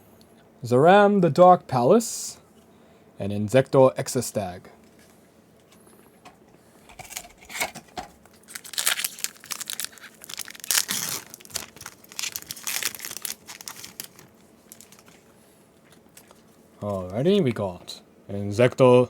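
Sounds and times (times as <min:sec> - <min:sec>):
foil wrapper tearing and crinkling: 0:07.0 - 0:15.2.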